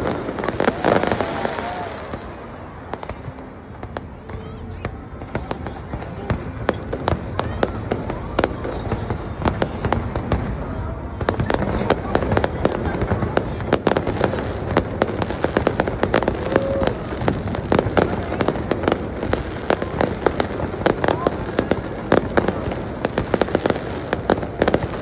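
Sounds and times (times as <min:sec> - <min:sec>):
fireworks bangs and crackles: 0:00.0 - 0:25.0.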